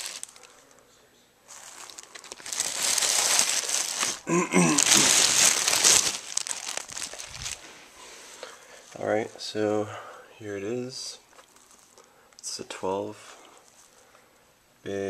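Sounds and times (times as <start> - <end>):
packaging crinkling and rustling: 0.0 - 0.8, 1.5 - 9.2, 11.3 - 12.6, 13.5 - 14.2.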